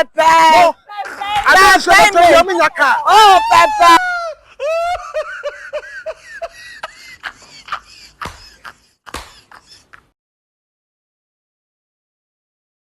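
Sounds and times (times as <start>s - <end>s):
person laughing: 3.8s - 10.2s.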